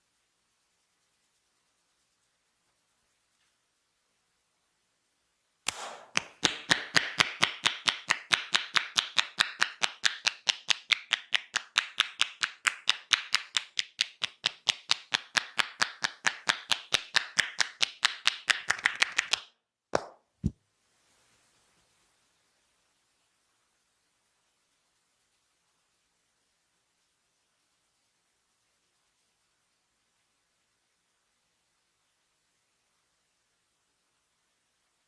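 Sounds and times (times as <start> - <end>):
hands striking body in massage: 5.7 - 19.3, 20.0 - 20.6.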